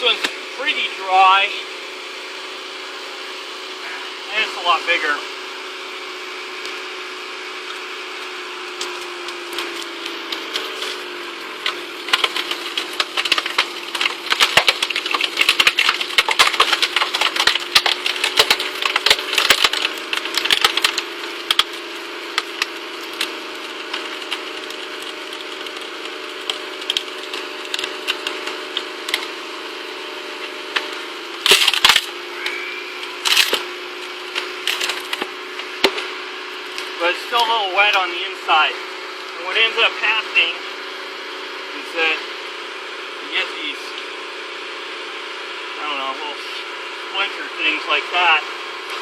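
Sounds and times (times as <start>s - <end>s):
wood splitter drive humming: 0.0s - 49.0s
wood cracking and splintering: 5.7s - 42.6s, 47.2s - 49.0s.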